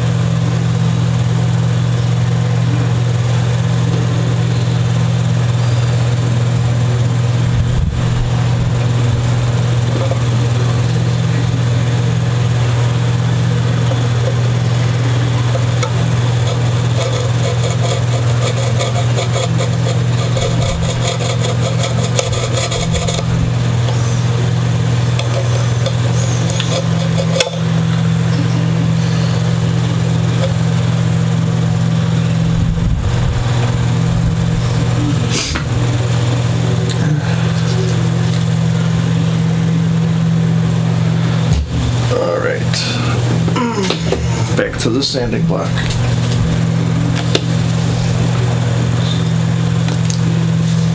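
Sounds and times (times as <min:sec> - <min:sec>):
low machine drone: 0:00.0 - 0:50.9
fast scratching: 0:08.3 - 0:31.1.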